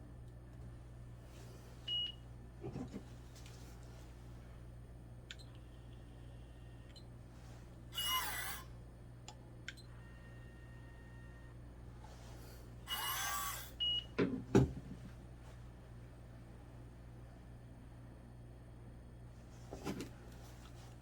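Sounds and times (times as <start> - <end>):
pipette motor whirring: 8.0 - 8.7, 12.9 - 13.8.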